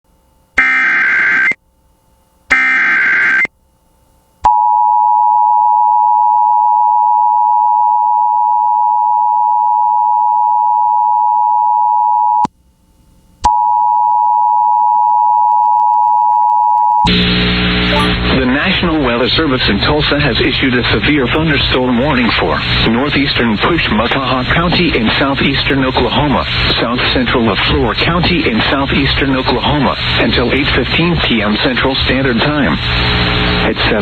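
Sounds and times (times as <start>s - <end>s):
two-tone attention signal: 17.9s - 18.2s.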